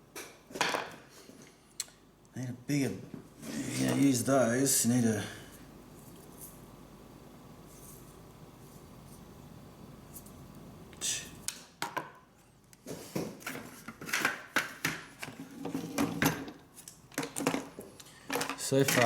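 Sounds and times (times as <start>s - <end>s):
tools clicking and clattering: 16.0s - 19.0s.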